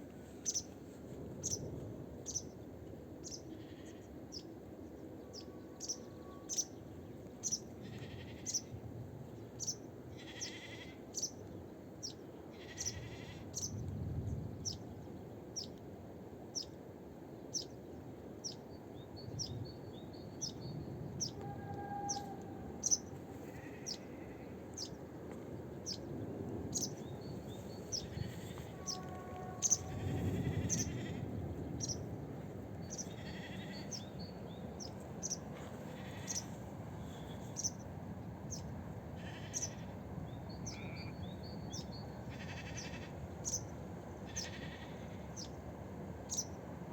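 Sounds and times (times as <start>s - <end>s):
animal calls: 21.3s - 24.4s.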